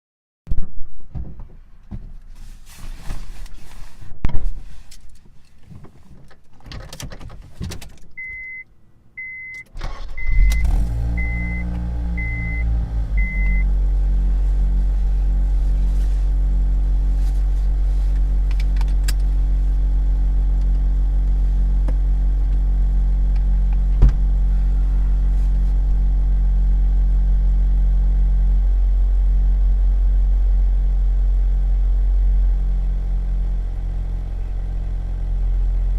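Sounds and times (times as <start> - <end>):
keys and interior clicks: 6.3 - 8.4
car engine starting and idling: 9.2 - 35.9
dashboard chime beeping: 12.2 - 13.7.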